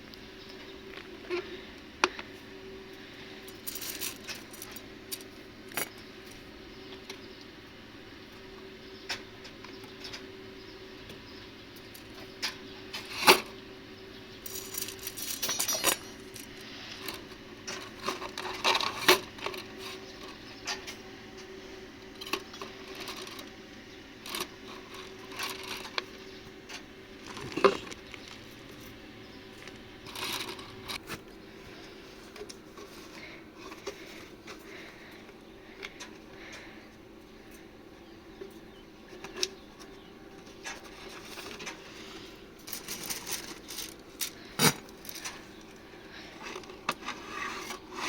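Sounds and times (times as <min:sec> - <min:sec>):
faint steady hum: 0:00.0 - 0:48.0
metal parts clinking and knocking: 0:03.4 - 0:06.0, 0:14.4 - 0:19.6, 0:29.6 - 0:31.0, 0:42.6 - 0:45.8.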